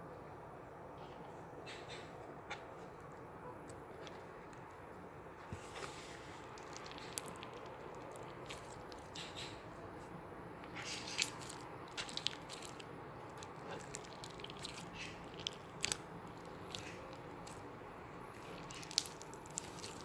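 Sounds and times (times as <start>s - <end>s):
slime crackling and squishing: 5.9s - 9.5s, 10.6s - 20.0s.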